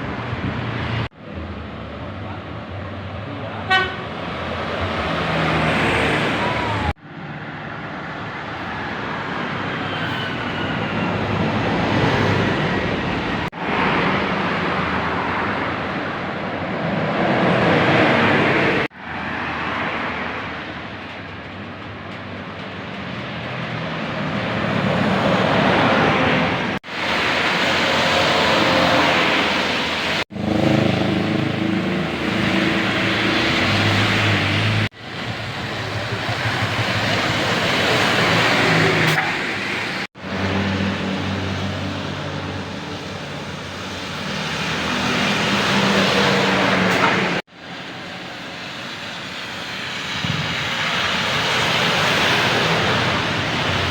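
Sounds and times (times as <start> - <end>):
buses passing: 0.0 - 53.9.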